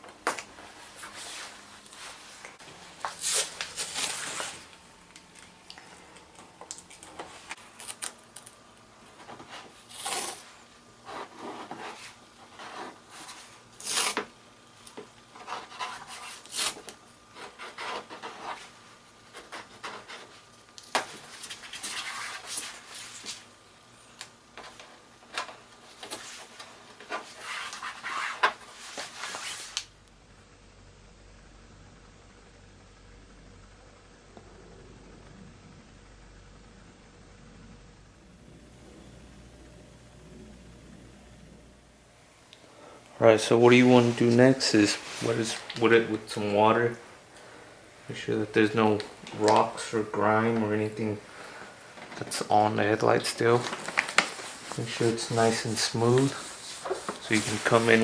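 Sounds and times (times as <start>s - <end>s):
tape rubbed down: 3.0s - 4.7s, 6.8s - 14.3s, 15.3s - 23.5s, 24.6s - 29.9s
masking tape pulled off roll: 6.6s - 8.6s.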